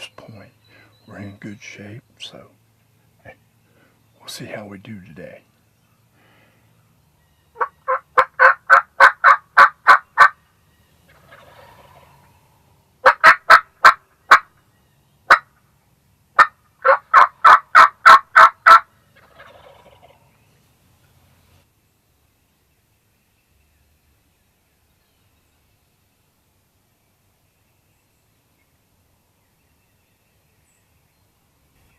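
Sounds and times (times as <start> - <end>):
distant turkey gobbling: 7.3 - 14.6, 15.2 - 15.6, 16.4 - 21.2
hen turkey yelping: 7.5 - 10.4, 11.1 - 12.4, 13.0 - 14.6, 15.3 - 15.5, 16.4 - 20.4.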